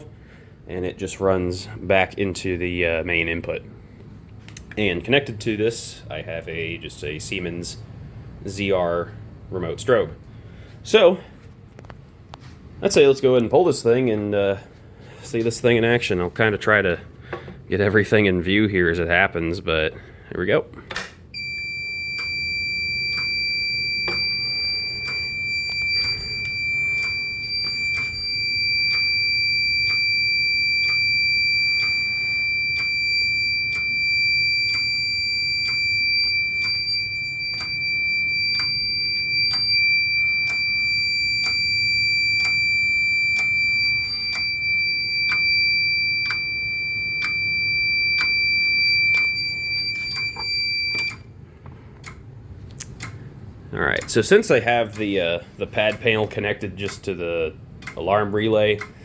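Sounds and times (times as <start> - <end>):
continuous high-pitched alarm tone: 21.3 - 51.4
regular ticks: 21.4 - 51.2, 51.9 - 53.2, 53.9 - 59.0.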